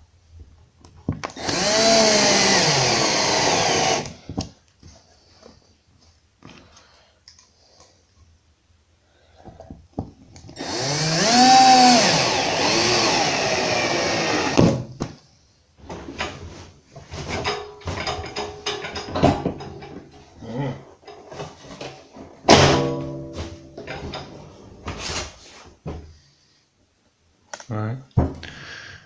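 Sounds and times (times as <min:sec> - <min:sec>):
drill driver motor running: 0:01.4 - 0:04.2, 0:10.6 - 0:14.8
fittings clicking and knocking: 0:17.4 - 0:20.2.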